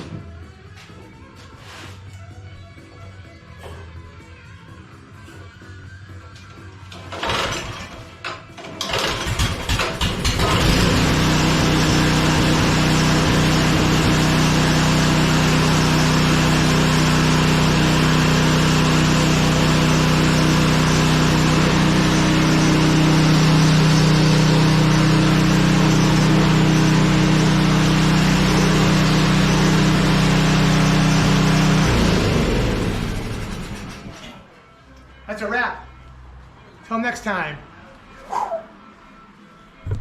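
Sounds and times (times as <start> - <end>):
small engine running: 8.8 - 34.4.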